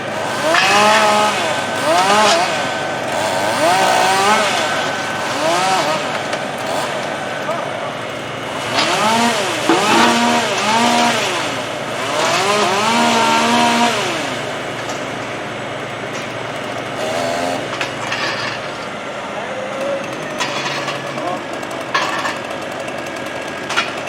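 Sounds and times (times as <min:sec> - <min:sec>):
chainsaw engine revving: 0:00.0 - 0:19.1.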